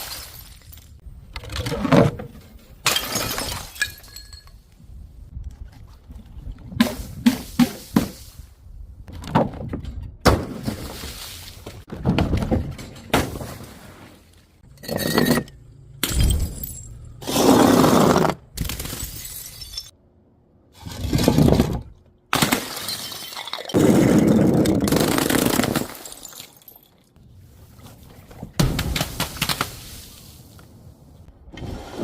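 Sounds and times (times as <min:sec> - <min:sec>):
glass bottles shattering: 0:00.0 - 0:01.0, 0:02.8 - 0:04.6, 0:18.9 - 0:19.9, 0:22.4 - 0:23.9, 0:25.6 - 0:27.1.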